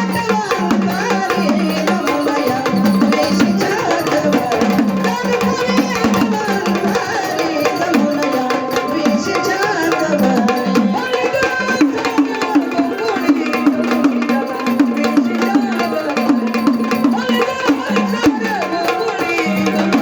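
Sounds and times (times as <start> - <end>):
drums beaten with sticks: 0.0 - 20.0.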